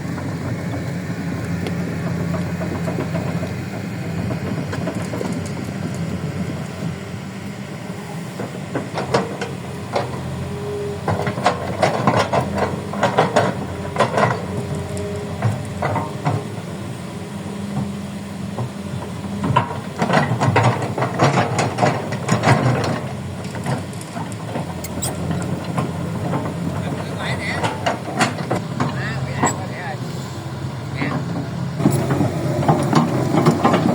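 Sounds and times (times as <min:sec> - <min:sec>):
excavator diesel engine running: 0:00.0 - 0:33.9
digging knocks clanks and scrapes: 0:08.7 - 0:16.7, 0:18.5 - 0:30.0, 0:30.8 - 0:33.9.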